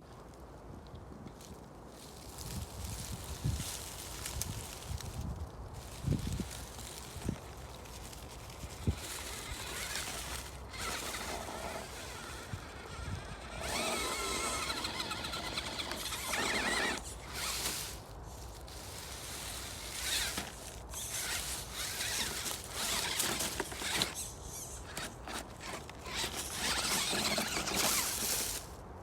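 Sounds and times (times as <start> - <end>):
electric motor whining: 8.4 - 18.0, 19.2 - 28.7.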